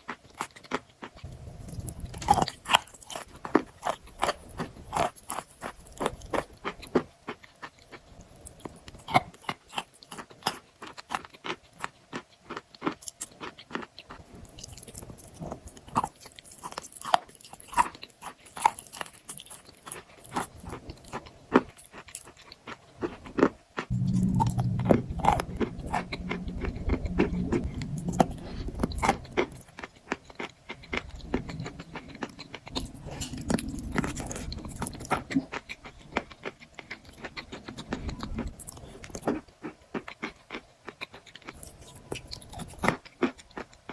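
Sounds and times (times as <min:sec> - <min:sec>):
chalk crunching and chewing: 0:00.0 - 0:43.9
low rumbling chew: 0:00.0 - 0:43.9.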